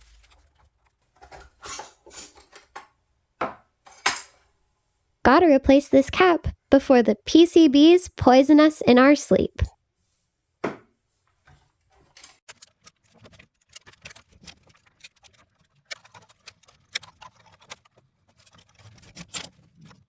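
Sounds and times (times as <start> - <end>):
metal parts clicking and tapping: 3.8 - 4.4.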